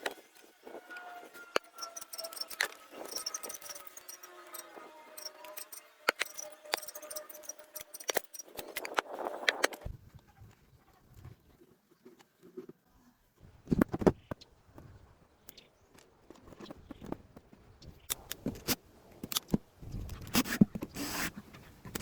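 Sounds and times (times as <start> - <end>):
tools clicking and clinking: 1.6 - 9.8.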